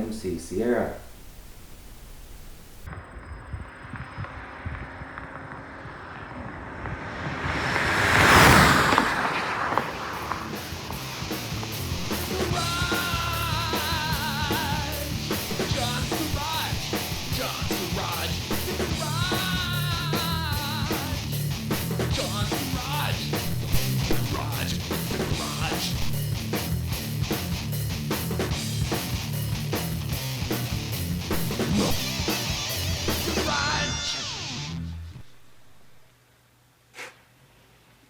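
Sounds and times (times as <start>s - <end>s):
rising whoosh: 1.0s - 12.5s
hard rock music: 9.8s - 35.7s.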